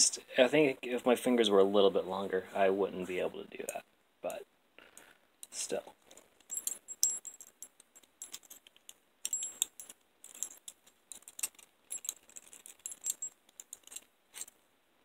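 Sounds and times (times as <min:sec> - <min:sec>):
handcuffs clicking and clinking: 0:05.0 - 0:14.6.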